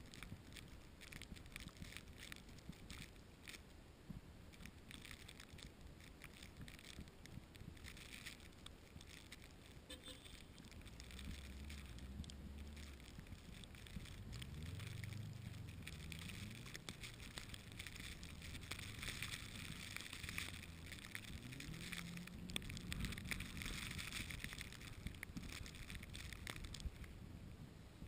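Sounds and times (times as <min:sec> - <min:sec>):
hiss with small crackles: 0:00.0 - 0:28.0
car engine revving: 0:11.0 - 0:24.4.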